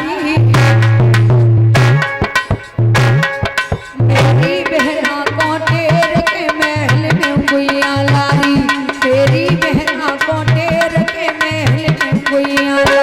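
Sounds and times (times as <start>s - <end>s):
ornamented melody instrument: 0.0s - 6.4s
hand drums beating: 0.0s - 13.0s.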